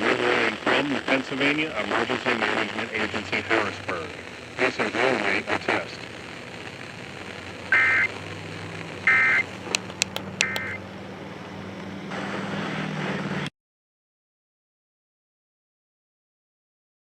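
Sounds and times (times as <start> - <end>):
low hum and hiss: 0.0 - 11.7
sharp clicks: 9.6 - 10.8.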